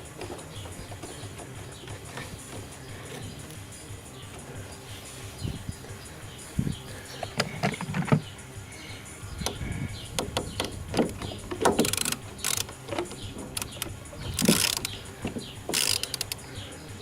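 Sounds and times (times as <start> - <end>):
tools clicking and knocking: 0.0 - 3.5, 7.2 - 8.2, 9.4 - 16.4
metal parts rattling: 9.5 - 16.6.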